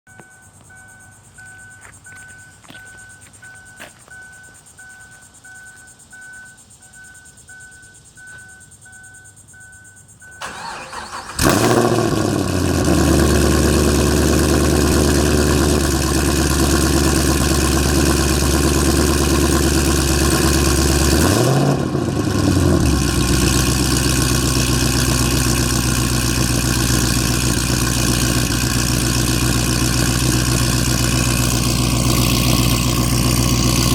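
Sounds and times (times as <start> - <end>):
starter cranking: 10.4 - 12.4
car engine idling loudly: 11.2 - 33.9.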